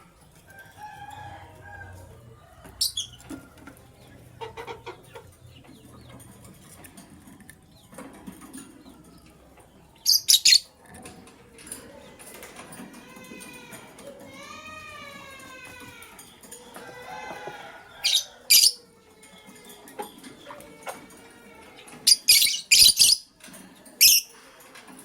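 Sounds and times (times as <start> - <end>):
lovebirds chirping: 2.7 - 3.3, 9.9 - 10.7, 17.9 - 18.8, 22.1 - 23.3.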